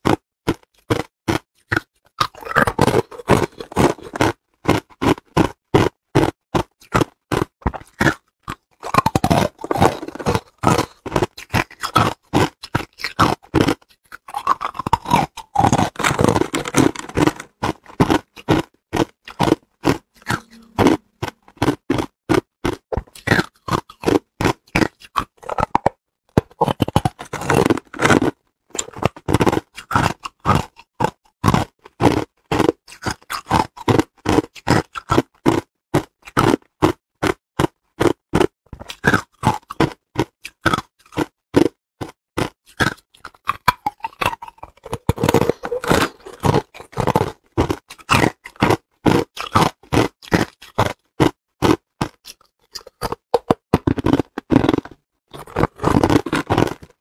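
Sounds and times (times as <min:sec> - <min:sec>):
ice being chewed with crunches: 0:00.0 - 0:57.0.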